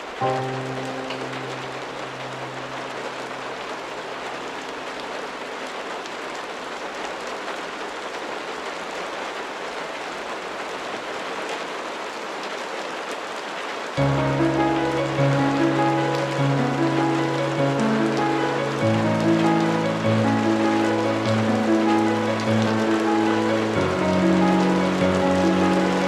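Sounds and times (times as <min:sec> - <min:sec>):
soft music: 0:00.0 - 0:05.8, 0:14.0 - 0:26.0
steady rain falling: 0:00.0 - 0:26.0.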